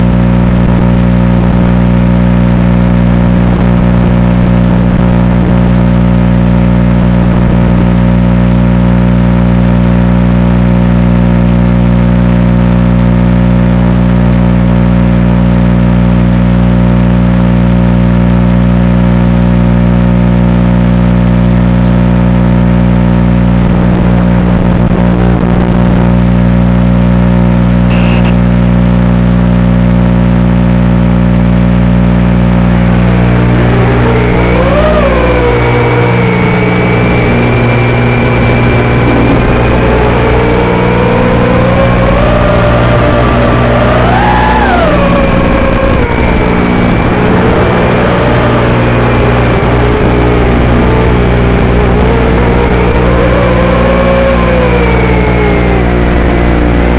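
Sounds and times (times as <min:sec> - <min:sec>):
electronic buzz of stacked tones: 0:27.8 - 0:28.5, 0:32.1 - 0:56.9.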